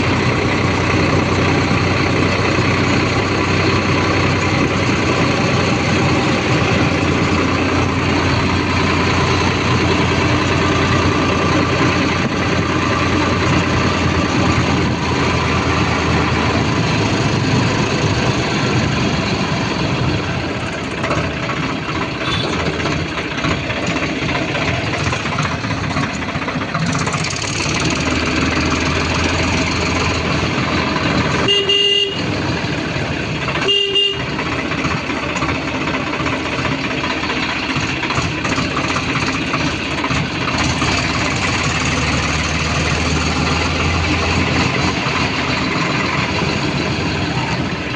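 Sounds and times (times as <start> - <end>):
heavy vehicle engine running: 0.0 - 47.9
short horn toots: 31.4 - 32.3, 33.6 - 34.3.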